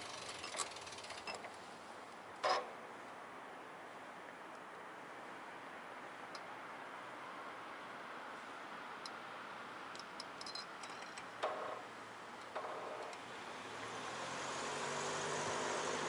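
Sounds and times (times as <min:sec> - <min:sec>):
bicycle clicks and rattles: 0:00.0 - 0:01.6
motor vehicle passing: 0:13.2 - 0:16.0.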